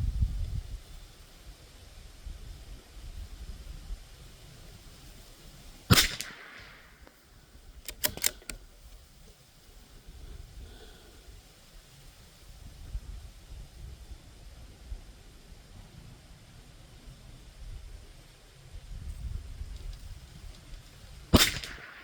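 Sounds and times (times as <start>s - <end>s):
rifle bolt metallic clicks: 5.9s - 7.2s, 7.8s - 9.0s, 21.4s - 22.0s
rifle shot: 5.9s - 7.2s, 7.8s - 8.6s, 21.3s - 22.0s.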